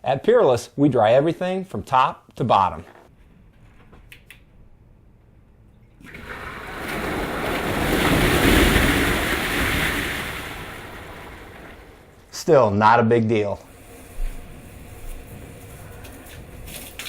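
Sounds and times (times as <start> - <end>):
water surging like a wave: 6.1 - 12.2.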